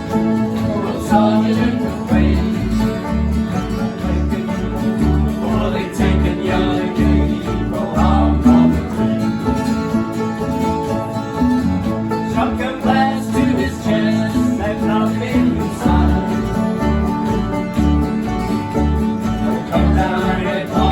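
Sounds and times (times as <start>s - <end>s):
acoustic guitar picking: 0.0s - 20.9s
banjo picking: 0.0s - 20.9s
rhythmic bass: 0.0s - 20.9s.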